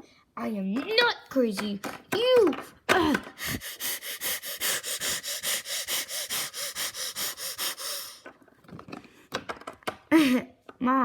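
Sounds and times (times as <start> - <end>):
person panting hard: 3.0 - 8.3.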